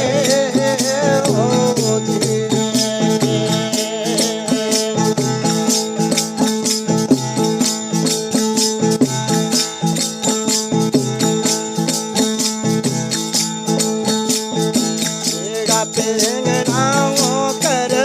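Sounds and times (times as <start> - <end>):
person singing: 0.0 - 5.9, 15.4 - 18.0
jingling hand percussion: 0.0 - 18.0.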